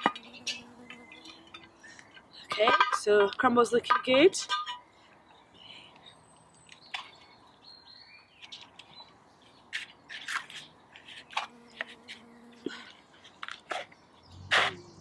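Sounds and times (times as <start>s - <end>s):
birds chirping: 0.0s - 3.7s, 4.4s - 15.0s.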